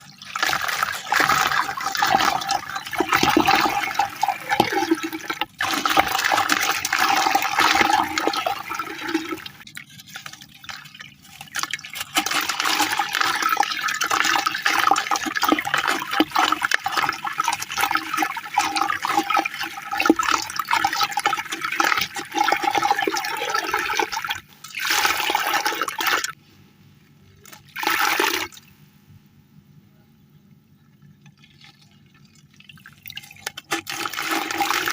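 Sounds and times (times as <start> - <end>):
cement crushed in water crackling: 0.2 - 24.0.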